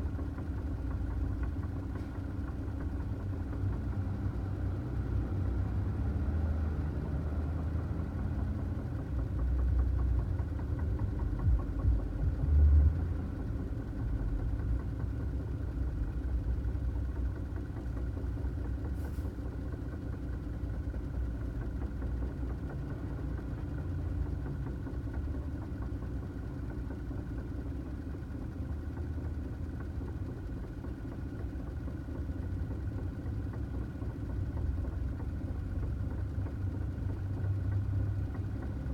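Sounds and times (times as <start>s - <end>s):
truck engine rumble: 0.0s - 26.0s.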